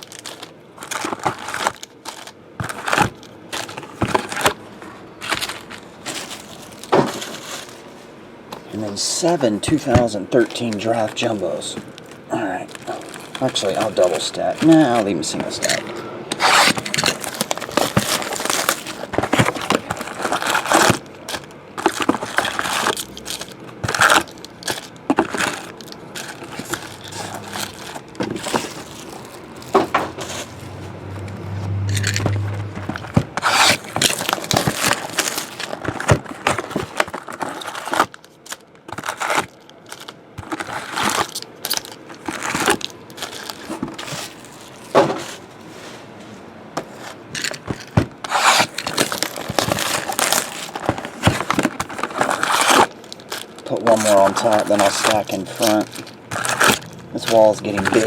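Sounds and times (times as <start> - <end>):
cardboard boxes scraping and knocking: 0.0 - 38.2, 38.9 - 58.0
low hum: 30.4 - 33.4.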